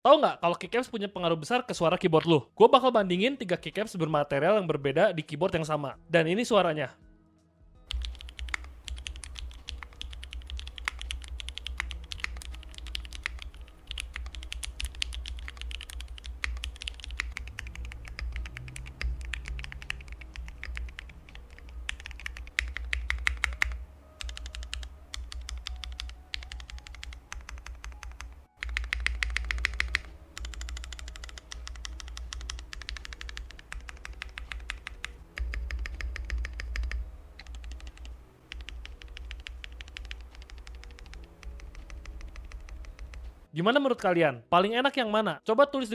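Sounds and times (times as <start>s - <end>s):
fast typing on keyboard: 7.9s - 43.3s.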